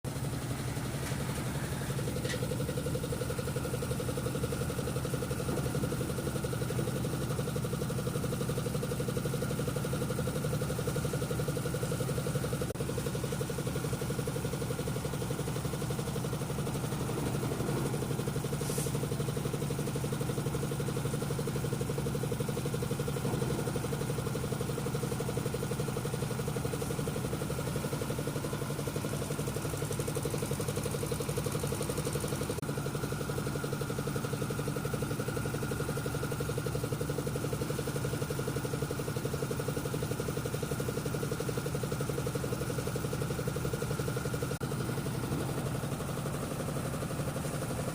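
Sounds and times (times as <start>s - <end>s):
concrete mixer engine droning: 0.1s - 47.9s.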